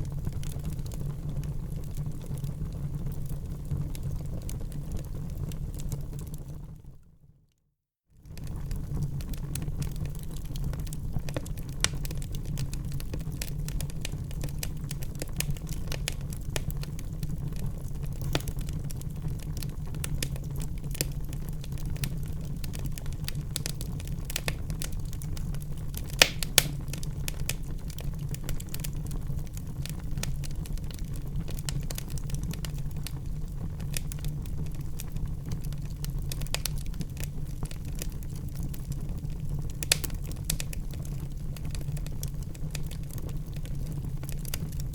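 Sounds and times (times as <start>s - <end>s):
wood fire crackling: 0.0s - 6.8s, 8.3s - 44.9s
fire pops: 8.3s - 32.8s, 35.8s - 38.7s, 39.7s - 44.9s.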